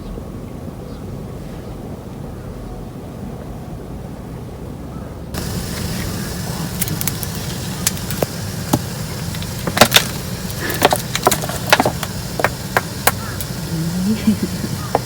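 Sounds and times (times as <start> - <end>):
steady low rumble: 0.0 - 15.0
sharp knocks and clicks: 6.8 - 13.6.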